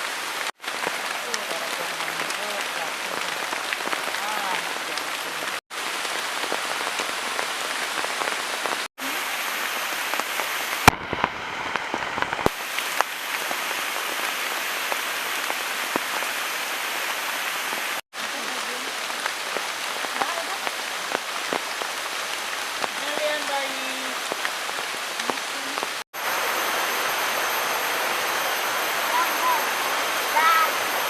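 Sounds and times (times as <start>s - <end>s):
steady rain falling: 0.0s - 31.0s.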